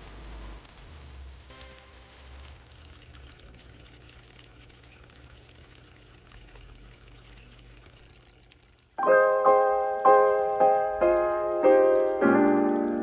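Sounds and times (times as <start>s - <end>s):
water trickling and splashing: 2.0s - 9.0s
piano music: 9.0s - 13.0s.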